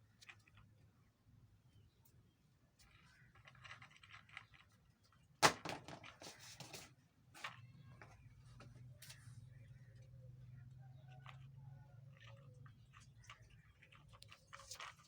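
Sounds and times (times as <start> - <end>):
kitten scratching and scraping: 2.8 - 5.4, 6.0 - 9.6, 12.1 - 15.0.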